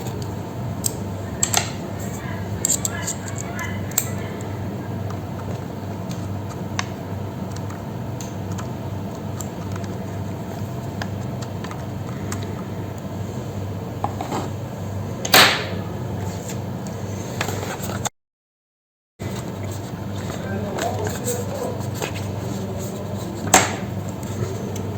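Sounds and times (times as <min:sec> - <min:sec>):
steady low hum: 0:00.0 - 0:18.1, 0:19.2 - 0:24.9.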